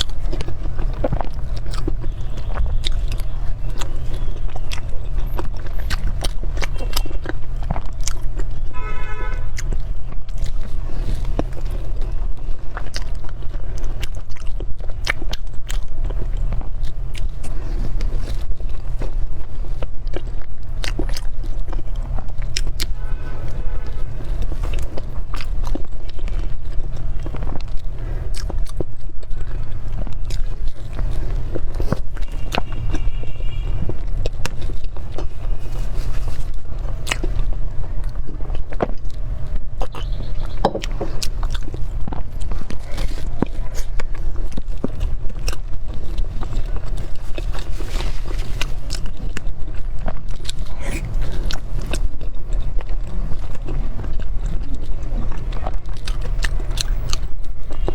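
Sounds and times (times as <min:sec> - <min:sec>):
eating cake with mouth clicks: 0:00.0 - 0:57.9.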